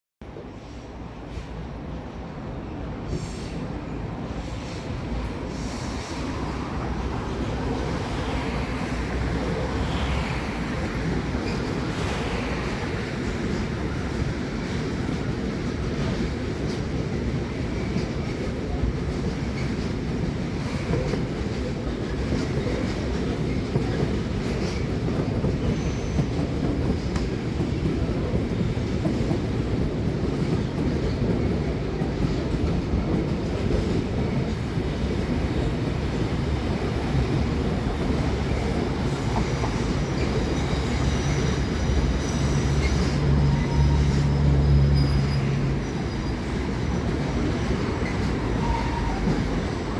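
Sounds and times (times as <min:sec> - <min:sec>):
train wheels clattering over rails: 0:04.3 - 0:49.9
wheel squeal: 0:38.5 - 0:49.6.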